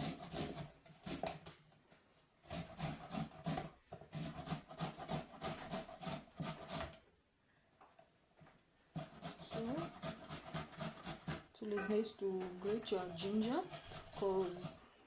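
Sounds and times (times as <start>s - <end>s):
ginger being grated: 0.0s - 1.4s, 9.0s - 12.0s, 12.6s - 15.0s.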